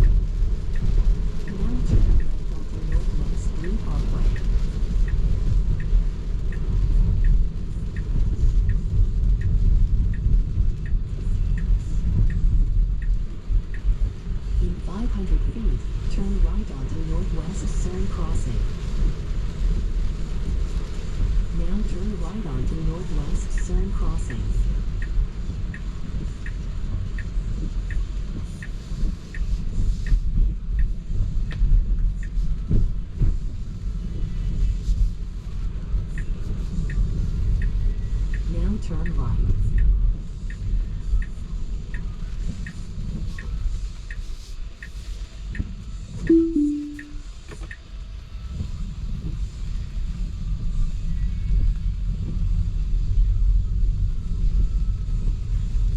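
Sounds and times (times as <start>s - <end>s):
turn signal ticking: 0.0s - 16.8s, 20.6s - 33.4s, 36.1s - 47.9s
road and tyre rumble: 0.0s - 46.3s.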